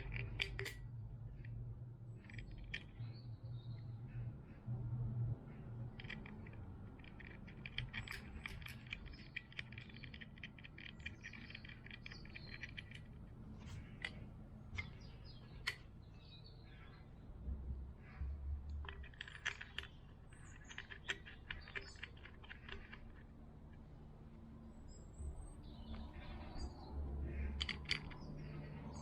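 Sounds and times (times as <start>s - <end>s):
light clicks and ticks: 0.0s - 1.6s, 5.5s - 15.9s, 18.0s - 24.0s, 25.9s - 29.0s
low steady hum: 0.0s - 29.0s.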